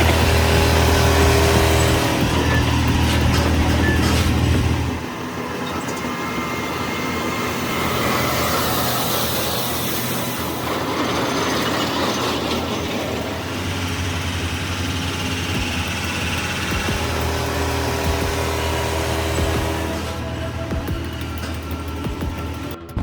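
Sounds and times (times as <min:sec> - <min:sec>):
heavy vehicle running: 0:00.0 - 0:23.0
low engine drone: 0:00.0 - 0:23.0.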